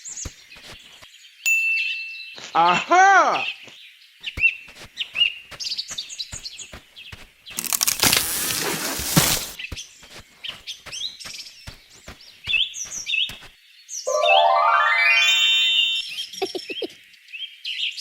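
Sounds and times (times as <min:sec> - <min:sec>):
small birds chirping: 0:03.4 - 0:08.3, 0:09.2 - 0:14.1.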